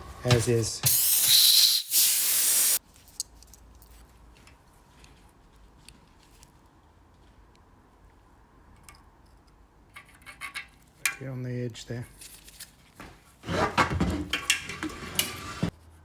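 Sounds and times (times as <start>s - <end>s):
loud hiss: 0.8s - 2.8s.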